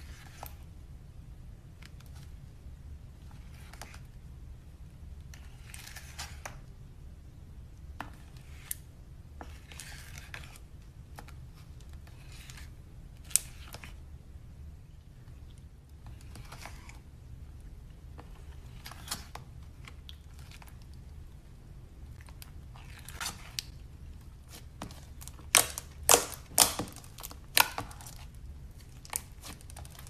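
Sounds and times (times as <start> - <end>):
slime crackling and squelching: 18.0 - 30.0.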